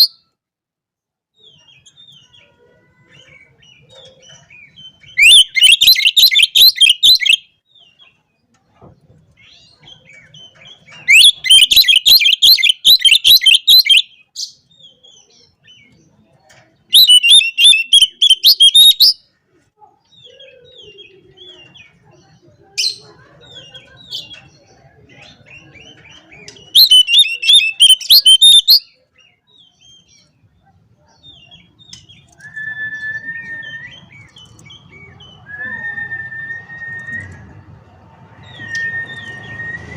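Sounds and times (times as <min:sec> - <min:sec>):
bird chirps: 0:00.0 - 0:00.4, 0:01.4 - 0:19.3, 0:20.1 - 0:37.8
bird warbling song: 0:01.4 - 0:08.2, 0:09.3 - 0:19.3, 0:20.1 - 0:30.4.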